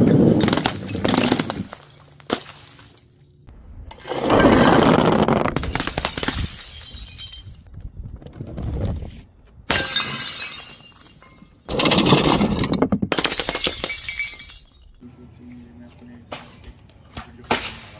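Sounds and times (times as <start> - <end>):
glass bottles shattering: 0.3 - 3.1, 5.6 - 7.7, 9.7 - 15.0
glass shards clattering: 5.6 - 7.6, 9.7 - 15.0.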